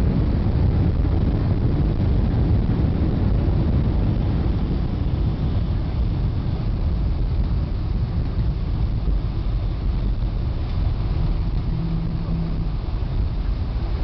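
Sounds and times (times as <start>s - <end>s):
airplane cabin rumble: 0.0s - 14.0s
brief low hum: 10.7s - 14.0s.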